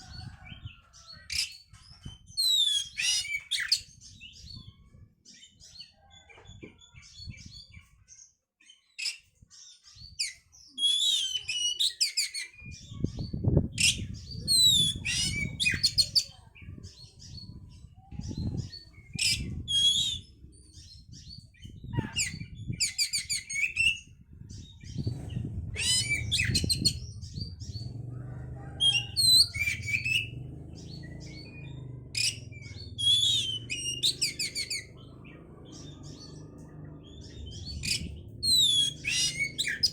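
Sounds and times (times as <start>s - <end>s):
bird singing whistles and trills: 2.3s - 4.7s, 10.0s - 16.3s, 18.2s - 24.1s, 24.7s - 27.8s, 31.3s - 36.4s, 37.2s - 39.9s
low rumble: 24.0s - 39.9s.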